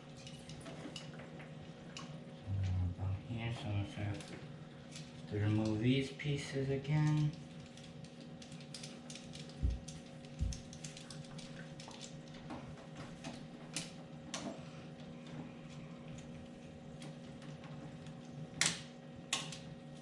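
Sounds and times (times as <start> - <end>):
steady low hum: 0.0 - 20.0
hose fittings clicking and tapping: 7.0 - 12.4.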